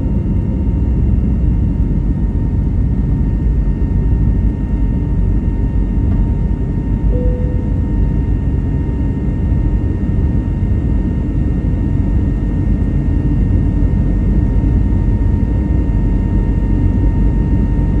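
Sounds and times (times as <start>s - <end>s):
thin steady engine whine: 0.0s - 18.0s.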